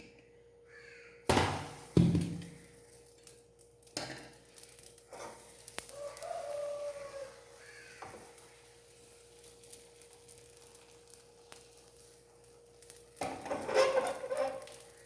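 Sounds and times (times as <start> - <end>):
metal cookware clanking: 3.9 - 5.5, 12.9 - 15.0.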